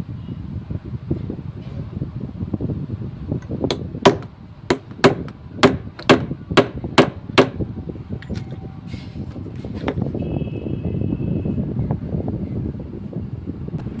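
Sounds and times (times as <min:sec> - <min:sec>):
hammer striking metal lock: 0:03.4 - 0:08.6.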